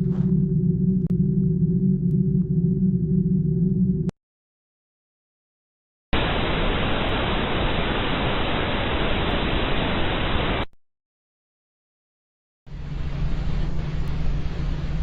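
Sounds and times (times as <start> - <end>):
static-like hiss: 6.2 - 10.7.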